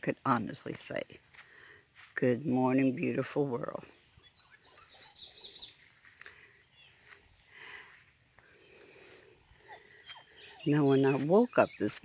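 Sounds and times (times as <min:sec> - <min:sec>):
high-pitched insect drone: 0:00.0 - 0:12.0
birds chirping: 0:02.4 - 0:12.0.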